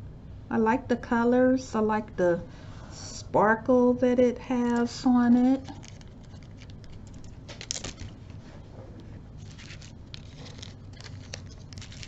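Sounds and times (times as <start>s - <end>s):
scratchy rustling of packets: 4.6s - 12.0s.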